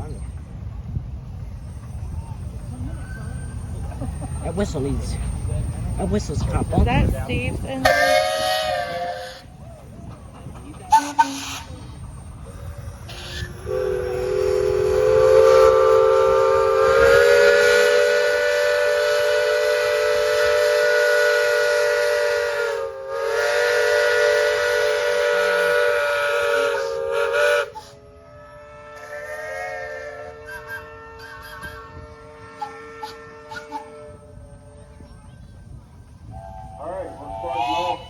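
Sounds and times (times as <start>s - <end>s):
steam whistle blowing: 7.8s - 9.5s, 10.9s - 11.9s, 13.0s - 34.9s, 36.3s - 38.0s.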